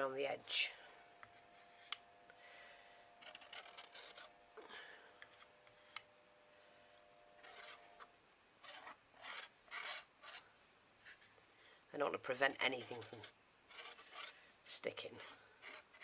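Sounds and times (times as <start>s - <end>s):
faint scraping and rubbing strokes: 0.6s - 2.1s, 2.8s - 11.5s, 12.7s - 16.0s.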